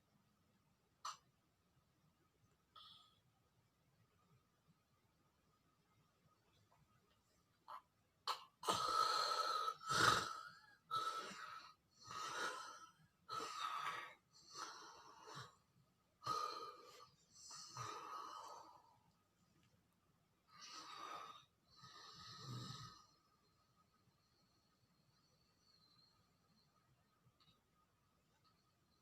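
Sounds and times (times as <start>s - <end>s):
person snoring: 8.6s - 15.6s, 20.6s - 23.1s.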